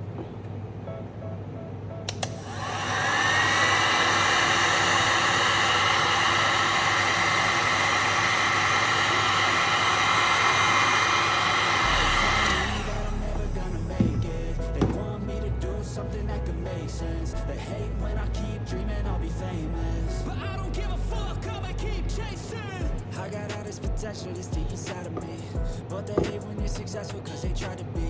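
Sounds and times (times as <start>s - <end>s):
power tool switch click: 2.1s - 2.4s
electric motor tool whining: 2.2s - 15.1s.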